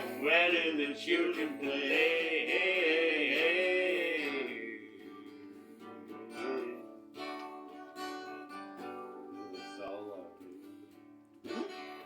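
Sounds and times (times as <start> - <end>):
man singing: 0.0 - 6.8
acoustic guitar strumming chords: 0.0 - 12.0.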